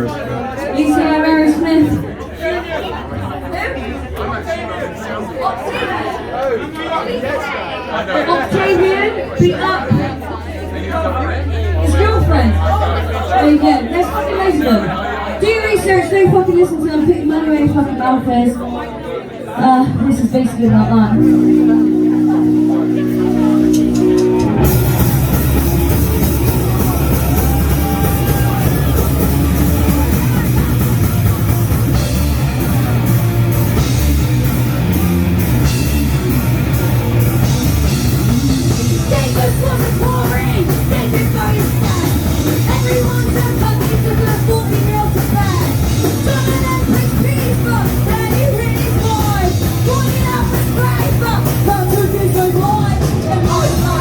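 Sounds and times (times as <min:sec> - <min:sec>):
punk rock band playing: 0:09.0 - 0:16.3, 0:20.7 - 0:54.0
crashing cymbals: 0:21.2 - 0:40.0.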